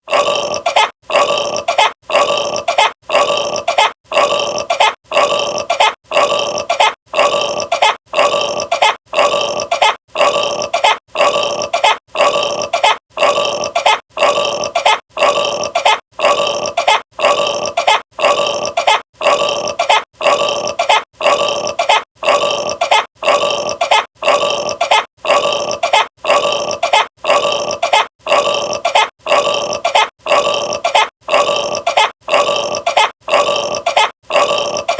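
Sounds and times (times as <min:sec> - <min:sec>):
person burping: 0:00.0 - 0:34.9.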